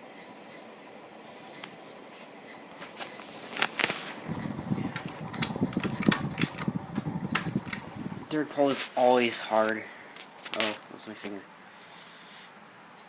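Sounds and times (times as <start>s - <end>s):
ceiling fan whirring: 0.0s - 13.0s
pull chain clicking and rattling: 4.4s - 8.0s.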